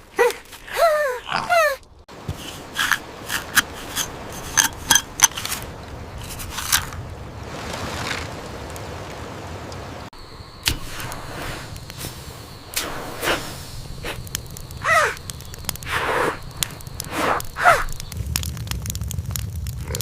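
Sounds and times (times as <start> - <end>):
campfire crackling and popping: 1.8 - 20.0
fire hiss: 2.1 - 20.0.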